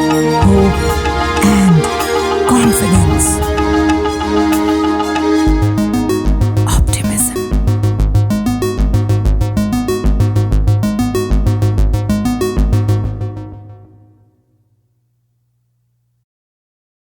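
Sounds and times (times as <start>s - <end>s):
electronic ringtone music: 0.0s - 6.2s.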